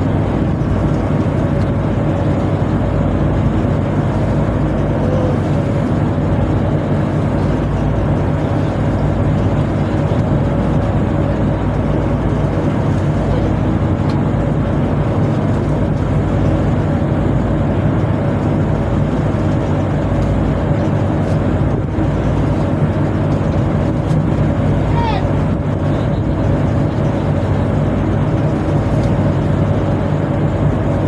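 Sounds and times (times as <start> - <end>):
boat machinery droning: 0.0 - 31.0.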